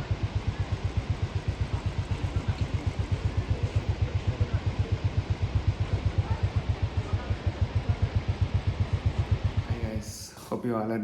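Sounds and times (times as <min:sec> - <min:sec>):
engine idling: 0:00.0 - 0:10.8.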